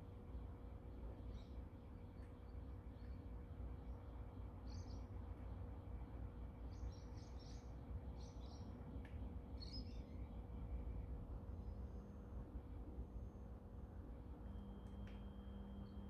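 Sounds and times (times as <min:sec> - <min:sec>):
faint birds chirping: 0:00.1 - 0:11.8.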